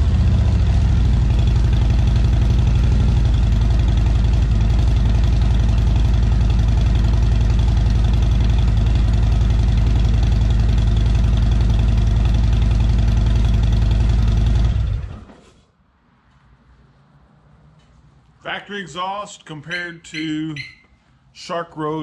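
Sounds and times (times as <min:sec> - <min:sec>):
motorcycle engine idling: 0:00.0 - 0:15.2.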